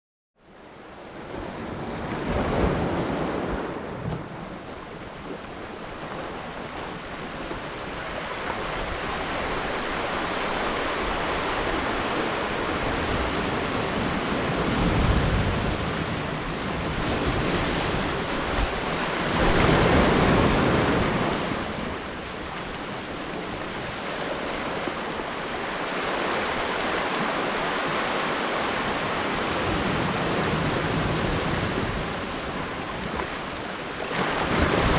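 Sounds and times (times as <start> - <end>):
ocean waves rushing: 0.7 - 34.9
wind on microphone: 1.1 - 34.9.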